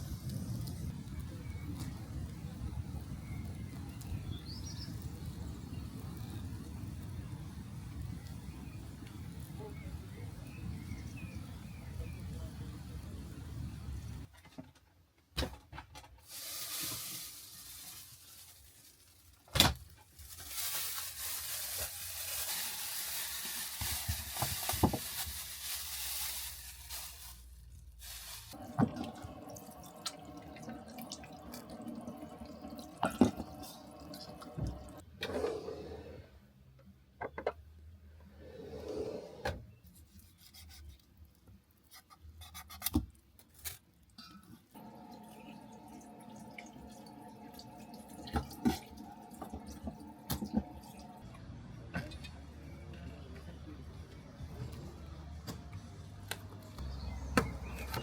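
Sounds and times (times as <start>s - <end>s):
water running: 28.1s - 35.0s, 44.8s - 51.2s.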